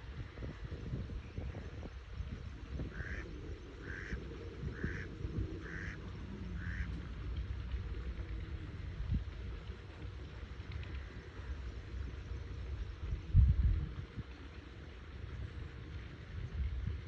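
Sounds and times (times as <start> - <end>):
low wind rumble: 0.0 - 17.0
duck quacking: 3.0 - 3.2, 3.8 - 6.0, 6.6 - 6.9.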